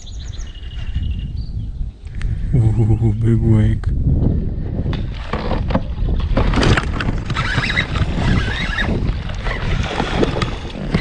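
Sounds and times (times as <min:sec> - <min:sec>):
water splashing against kayak: 0:04.8 - 0:11.0.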